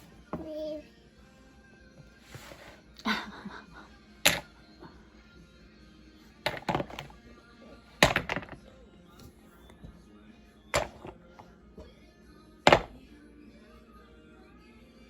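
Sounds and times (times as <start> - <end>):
hard objects knocking: 6.5 - 7.1, 8.0 - 8.6, 10.8 - 11.2, 12.7 - 13.0.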